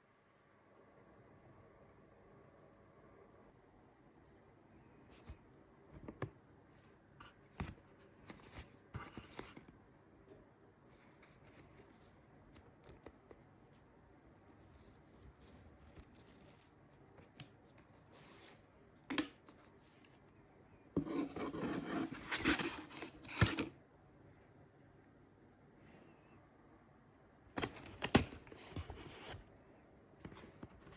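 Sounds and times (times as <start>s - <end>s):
packaging clicks and scrapes: 21.2s - 23.7s, 27.6s - 29.4s
packaging rustling: 27.6s - 29.4s.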